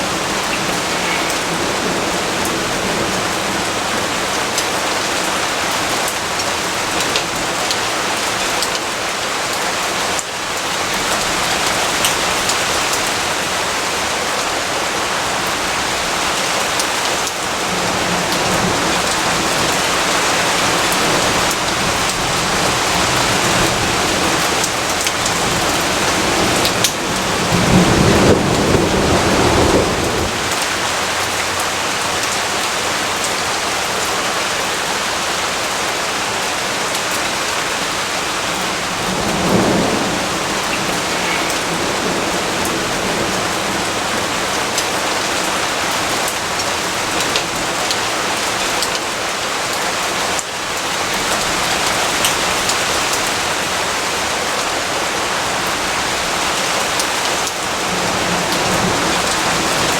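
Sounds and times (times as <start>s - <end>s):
heavy rainfall: 0.0s - 59.9s
thunder rumbling: 17.4s - 31.8s, 38.0s - 46.3s.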